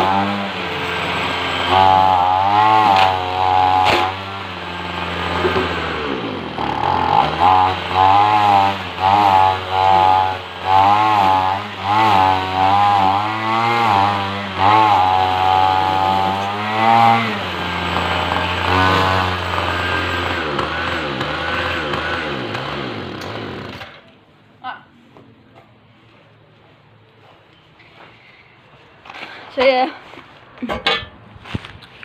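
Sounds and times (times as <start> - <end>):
string trimmer engine revving: 0.0 - 24.1.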